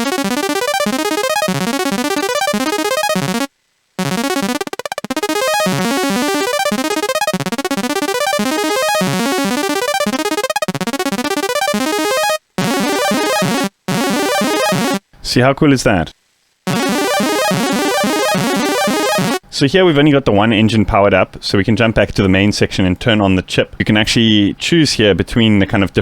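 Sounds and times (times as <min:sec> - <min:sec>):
chiptune synthesizer arpeggio: 0:00.0 - 0:15.0, 0:16.7 - 0:19.4.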